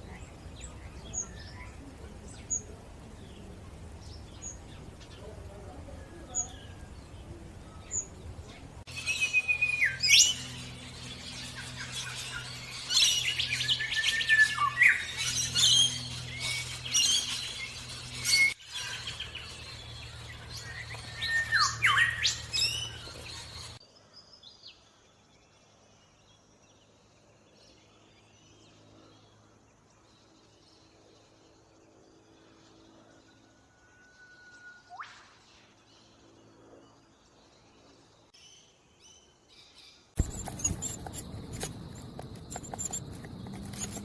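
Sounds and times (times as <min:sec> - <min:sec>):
bird chirping: 0:00.0 - 0:44.0
faint distant bird calls: 0:00.0 - 0:44.0
steady low hum: 0:40.2 - 0:44.0.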